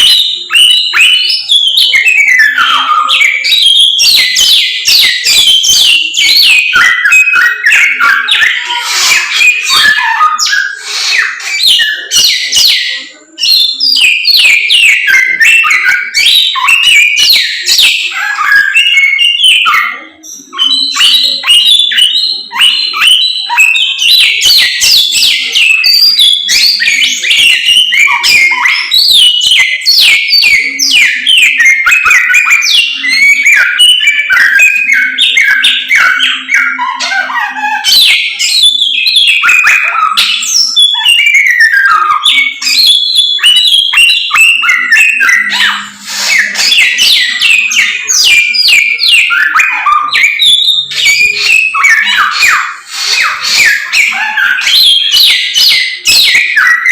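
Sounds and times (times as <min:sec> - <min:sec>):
songbird whistling and chirping: 0:00.0 - 0:56.9.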